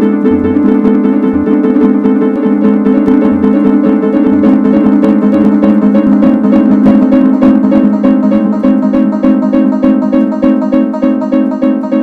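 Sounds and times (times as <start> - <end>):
fire alarm pulsing tone: 0.0 - 12.0.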